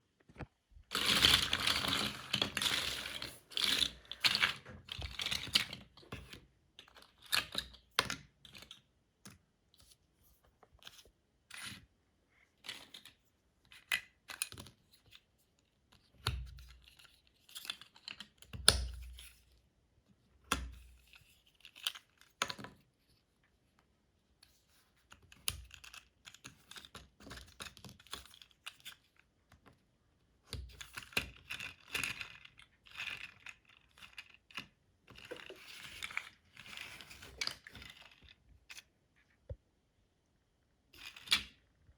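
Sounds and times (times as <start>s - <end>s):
plastic toy bricks rattling: 0.9s - 5.6s.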